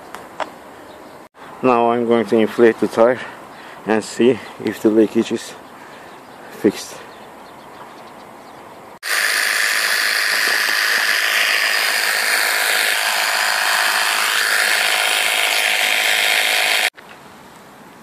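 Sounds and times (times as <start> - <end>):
air compressor running: 9.0 - 16.9.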